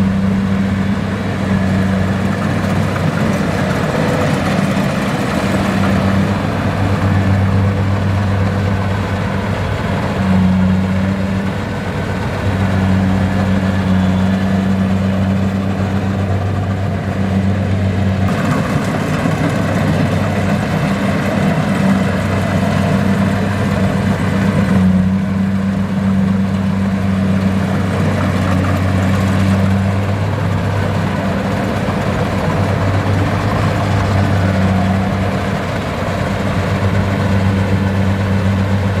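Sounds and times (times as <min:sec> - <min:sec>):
diesel engine humming: 0:00.0 - 0:39.0.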